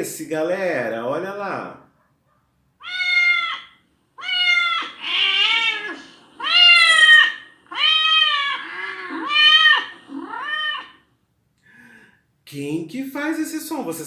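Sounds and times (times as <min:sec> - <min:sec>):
cat meowing: 0:02.8 - 0:11.1.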